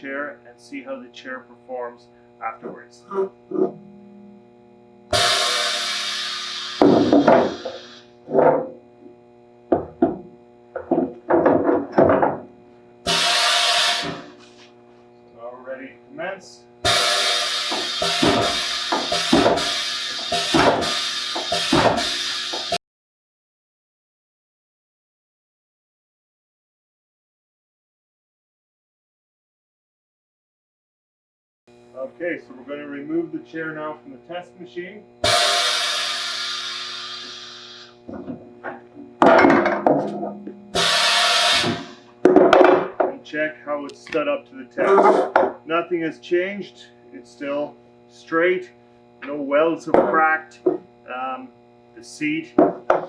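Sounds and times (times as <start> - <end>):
metal chair knocking and clattering: 9.8 - 12.5, 17.8 - 22.8, 38.1 - 40.7
music with drum beat and cymbals: 16.9 - 22.8.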